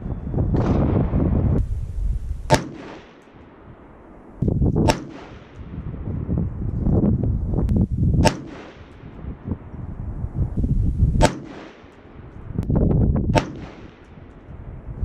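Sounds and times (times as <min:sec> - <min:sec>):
rifle shots: 0:02.4 - 0:04.1, 0:04.8 - 0:05.8, 0:08.2 - 0:09.2, 0:11.2 - 0:12.4, 0:13.3 - 0:14.3.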